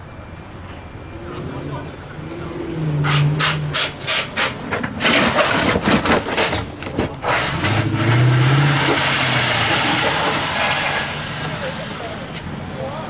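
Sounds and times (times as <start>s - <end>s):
car engine revving: 1.1s - 13.0s.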